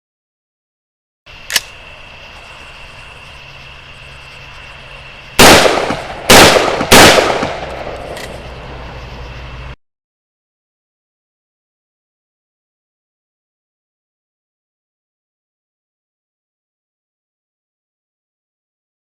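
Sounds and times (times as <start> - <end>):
sharp click: 1.4 - 1.8, 7.2 - 8.4
rifle shots with echo: 5.4 - 8.4.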